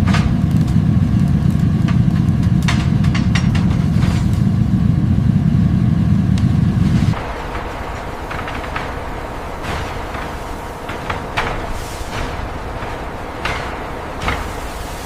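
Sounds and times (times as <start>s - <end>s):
heavy factory machinery rumbling: 0.0s - 15.0s
metallic clanks and knocks: 1.9s - 4.5s, 7.1s - 15.0s.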